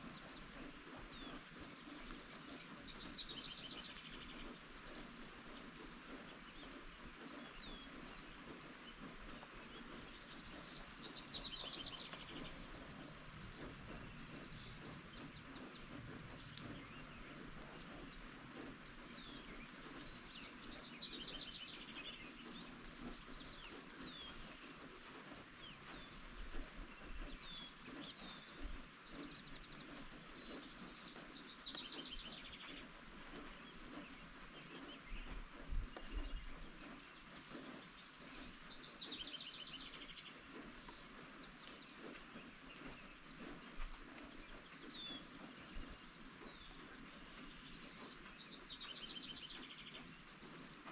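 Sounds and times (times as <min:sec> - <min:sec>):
steady rain: 0:00.0 - 0:50.9
bird chirps: 0:09.7 - 0:24.8, 0:36.0 - 0:43.7, 0:44.4 - 0:50.4.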